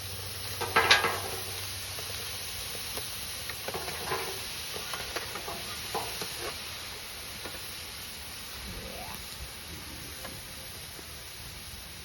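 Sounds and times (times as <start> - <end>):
shrimp sizzling on a grill: 0.0 - 12.0
scrapes and clicks on grill: 2.7 - 6.7.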